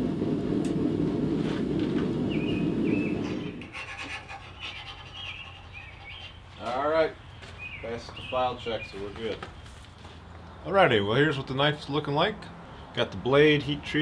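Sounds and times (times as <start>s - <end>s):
low rushing noise: 0.0s - 3.7s
bird chirping: 2.2s - 3.6s, 4.5s - 9.8s
file scraping steel blade: 3.6s - 6.2s.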